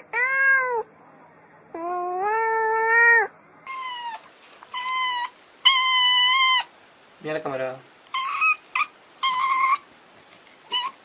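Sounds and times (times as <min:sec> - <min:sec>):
cats meowing: 0:00.0 - 0:00.9, 0:01.7 - 0:06.7.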